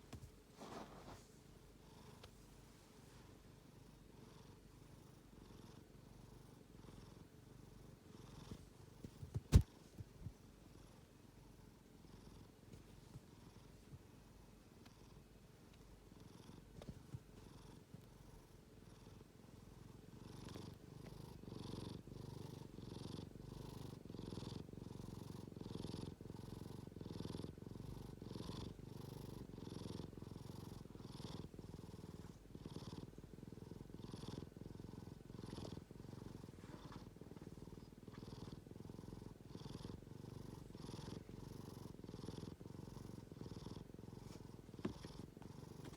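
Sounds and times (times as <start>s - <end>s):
pet snoring: 20.2s - 45.9s.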